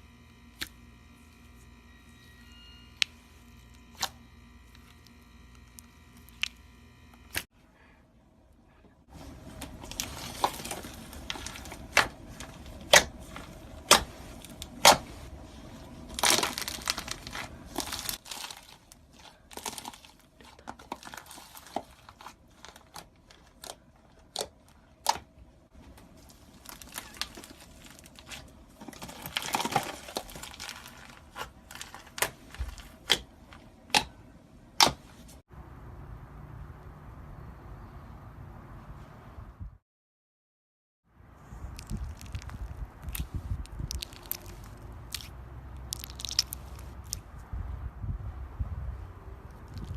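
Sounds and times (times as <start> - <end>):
slime crinkly crackle: 9.5 - 24.6, 25.9 - 33.1, 41.7 - 47.2.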